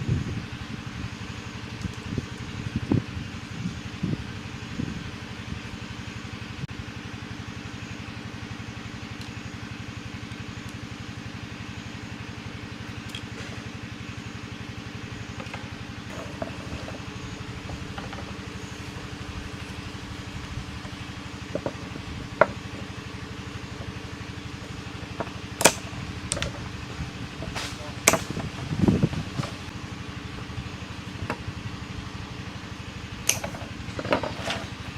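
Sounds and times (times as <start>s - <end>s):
small engine running: 0.0s - 34.9s
sharp clicks: 25.2s - 26.8s, 33.2s - 33.6s.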